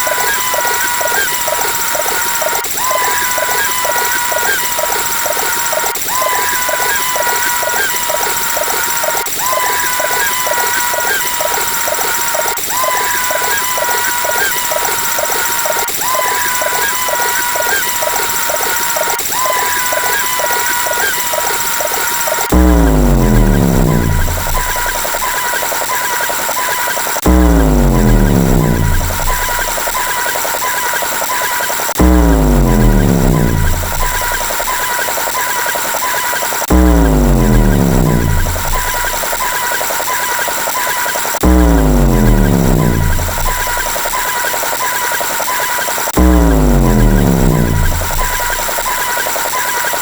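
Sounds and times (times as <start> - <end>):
synthetic pulsing sound effect: 20.8 - 50.0.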